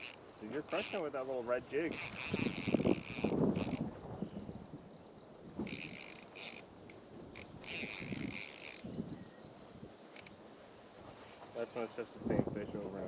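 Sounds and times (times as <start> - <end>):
fishing reel whirring: 0.0 - 1.1, 1.9 - 3.8, 5.6 - 9.0, 10.1 - 10.4.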